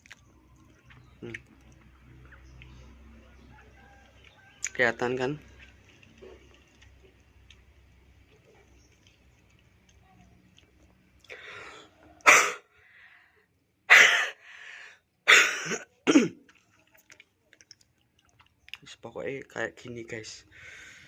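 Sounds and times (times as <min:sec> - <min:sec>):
man coughing harshly: 0:12.3 - 0:12.6, 0:15.3 - 0:16.4.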